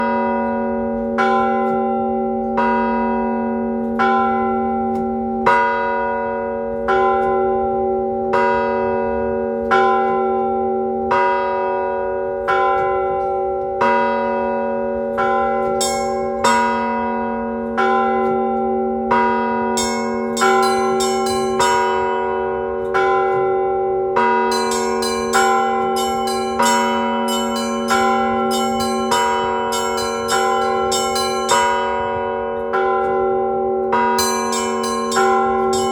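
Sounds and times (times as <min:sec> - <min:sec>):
cathedral bells ringing: 0:00.0 - 0:35.9
small high bells striking quickly: 0:19.8 - 0:22.0, 0:24.5 - 0:31.9, 0:34.2 - 0:35.9.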